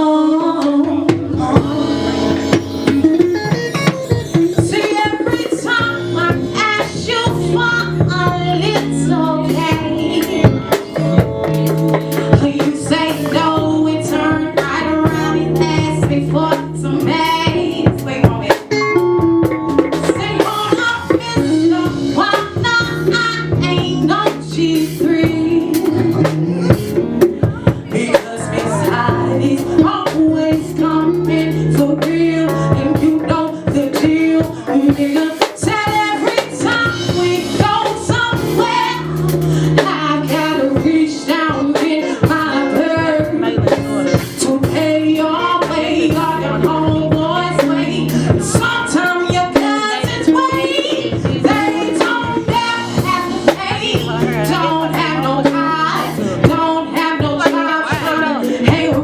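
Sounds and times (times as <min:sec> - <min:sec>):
lead vocal singing: 0:00.0 - 0:03.0, 0:20.0 - 0:59.0
live band playing: 0:00.0 - 0:59.0.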